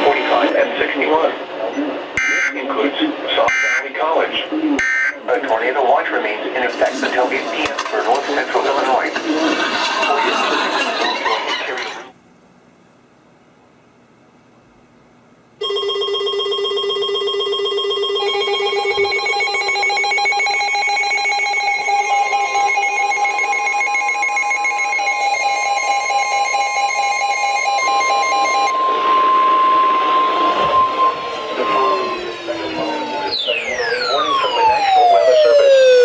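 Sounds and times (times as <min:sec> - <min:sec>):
high steady tone: 0:17.9 - 0:36.0
electronic alert tones: 0:18.2 - 0:28.8, 0:30.6 - 0:36.0
rush of noise: 0:28.7 - 0:36.0.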